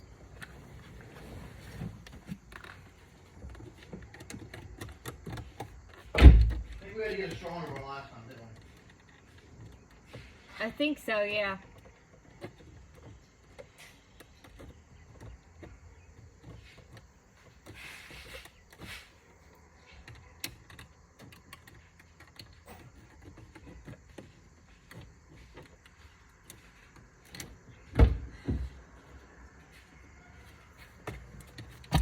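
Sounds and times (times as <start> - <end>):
hand tools clicking and rattling: 2.4 - 6.1.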